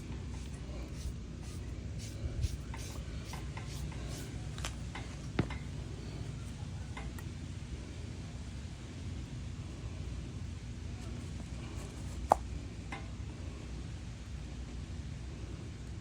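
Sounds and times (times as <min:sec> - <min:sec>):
light scraping and rubbing: 0:00.0 - 0:05.5
steady low hum: 0:00.0 - 0:16.0.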